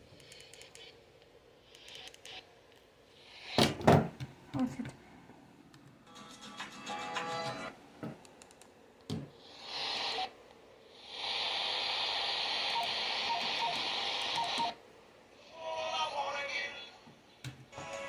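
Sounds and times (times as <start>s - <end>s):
radio static hiss: 9.5s - 10.4s, 11.0s - 14.8s.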